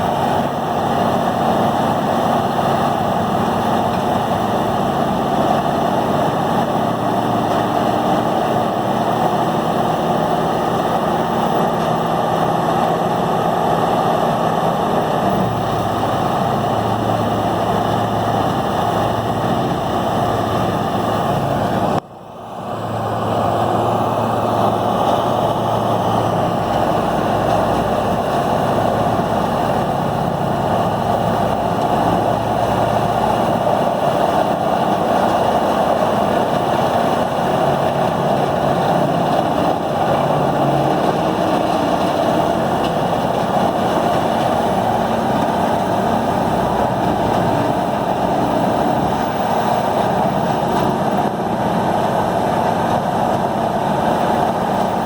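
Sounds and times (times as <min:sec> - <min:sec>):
diesel grinder running under load: 0:00.0 - 0:55.0.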